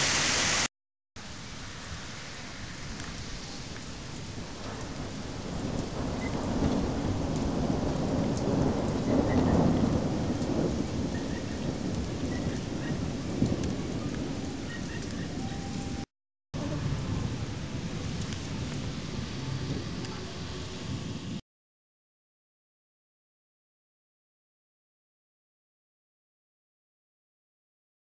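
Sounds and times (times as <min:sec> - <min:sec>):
steady rain: 0:00.0 - 0:21.4
thunder rolling: 0:04.0 - 0:21.4.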